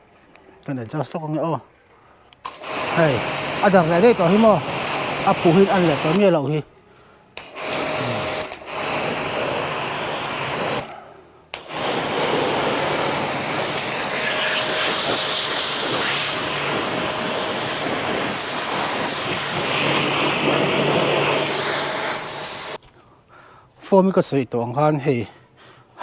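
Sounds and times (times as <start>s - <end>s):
pressure washer spraying water: 2.5s - 6.3s, 7.4s - 10.9s, 11.6s - 22.8s.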